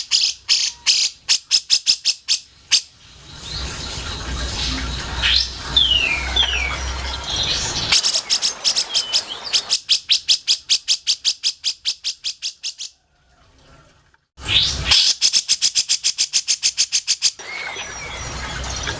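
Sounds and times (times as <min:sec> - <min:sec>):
descending bird whistles: 0:05.2 - 0:12.8.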